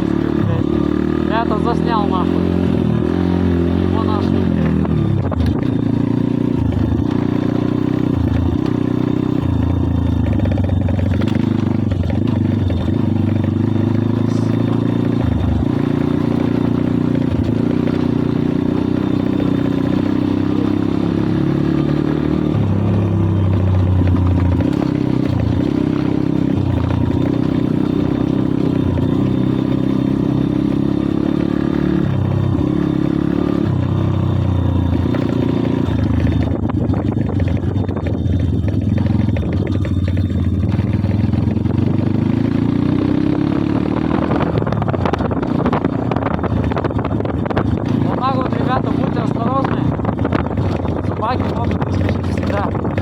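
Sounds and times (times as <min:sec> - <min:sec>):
motorbike engine revving: 0:00.0 - 0:53.0.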